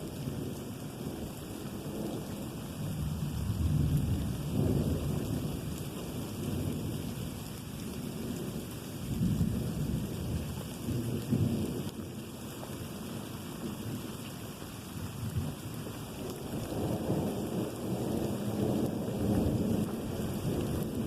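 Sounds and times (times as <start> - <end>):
steady rain falling: 0.0 - 21.0
rolling thunder: 2.9 - 7.0.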